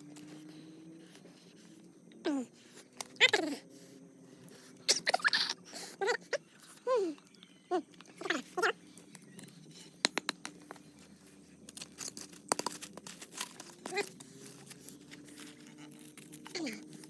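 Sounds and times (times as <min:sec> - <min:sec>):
sharp clicks and crackles: 0:11.7 - 0:17.0.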